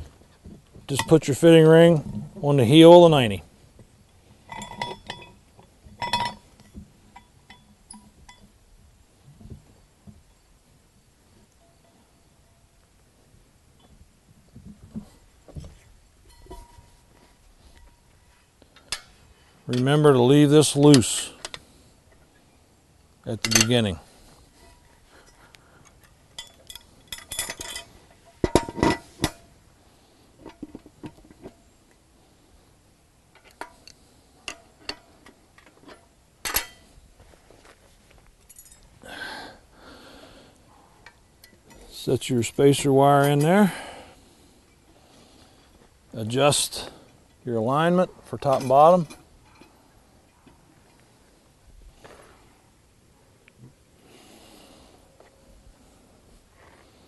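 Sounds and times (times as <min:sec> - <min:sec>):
metal fittings clinking and ringing: 0:04.5 - 0:08.5, 0:16.2 - 0:17.1, 0:23.4 - 0:24.0, 0:26.3 - 0:29.5, 0:38.5 - 0:38.9.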